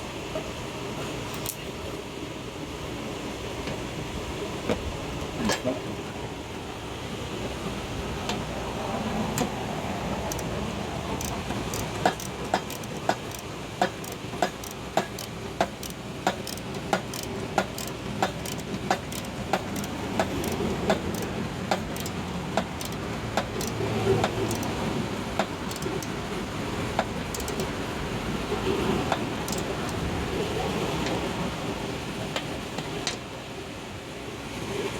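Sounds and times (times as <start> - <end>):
hand tool metallic clicking: 1.3 - 1.7, 10.2 - 27.9, 29.0 - 30.1.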